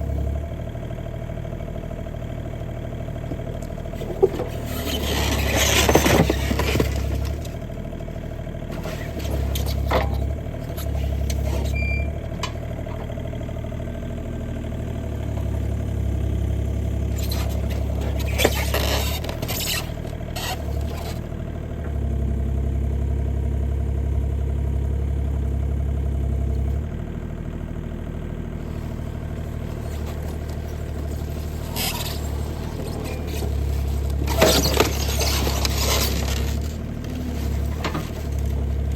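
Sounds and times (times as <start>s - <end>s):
excavator diesel engine humming: 0.0s - 38.9s
scrapes and knocks: 3.3s - 7.6s, 8.7s - 11.8s, 17.1s - 21.2s, 28.6s - 38.9s.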